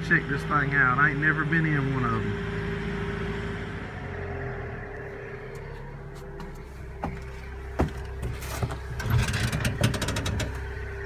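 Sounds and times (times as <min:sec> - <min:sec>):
cab door clunking: 0:05.6 - 0:11.0
footsteps knocking on metal steps: 0:06.4 - 0:09.0.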